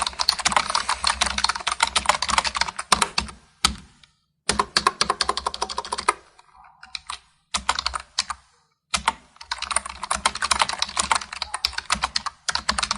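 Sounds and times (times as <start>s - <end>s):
fast typing on keyboard: 0.0s - 3.8s, 4.5s - 12.9s.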